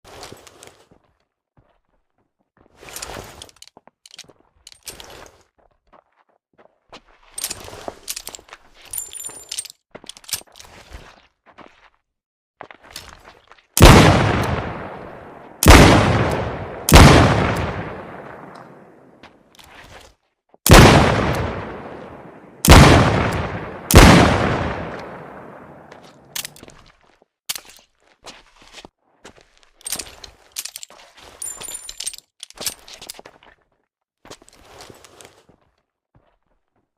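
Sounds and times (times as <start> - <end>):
metallic clicks and handling: 3.4 - 5.1, 7.4 - 10.6, 26.4 - 26.7, 27.5 - 27.8, 29.8 - 33.2.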